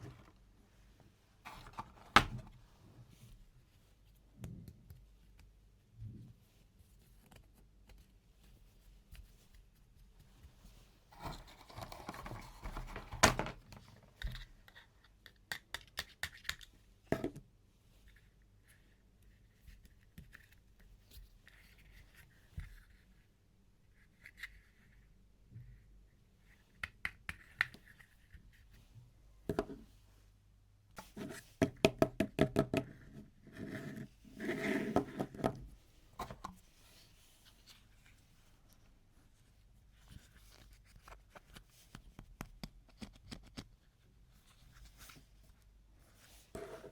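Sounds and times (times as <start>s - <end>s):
packaging rustling and scraping: 11.1s - 14.0s.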